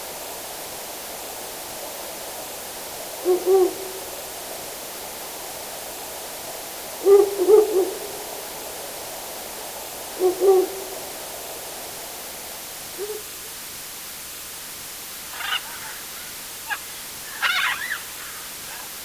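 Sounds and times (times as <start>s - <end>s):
forest ambience hiss: 0.0s - 19.0s
owl hooting: 3.1s - 4.2s, 7.0s - 8.3s, 10.1s - 11.1s, 12.9s - 13.5s, 15.2s - 19.0s.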